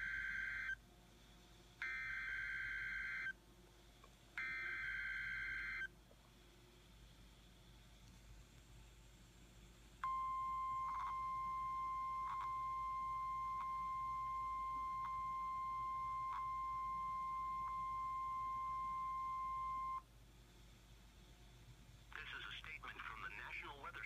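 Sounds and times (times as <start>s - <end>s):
faint static clicks: 0.0s - 24.0s
high pure alarm tone: 10.0s - 20.0s.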